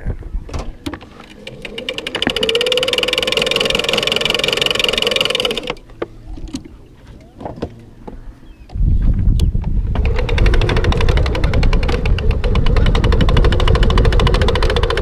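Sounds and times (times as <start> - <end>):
electric motor winding cable: 1.0 - 5.9, 9.8 - 15.0
very fast clicking: 1.2 - 5.8, 9.9 - 15.0.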